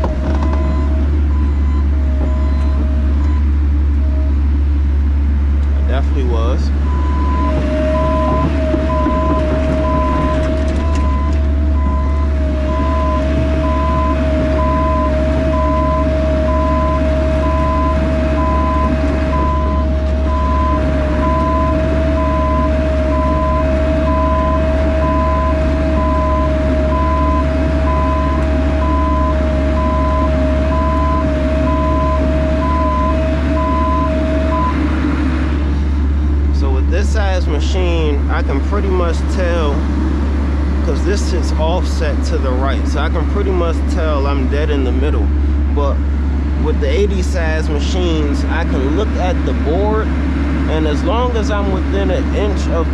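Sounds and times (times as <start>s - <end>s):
excavator travel alarm beeping: 0.0s - 4.6s, 6.8s - 34.9s
diesel engine running: 0.0s - 52.9s
high whine: 0.0s - 52.9s.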